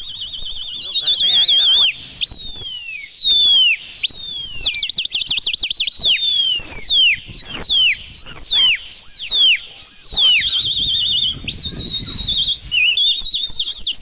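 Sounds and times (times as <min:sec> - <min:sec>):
shrill falling whistles: 0:00.0 - 0:14.0
fast warbling trill: 0:06.4 - 0:14.0.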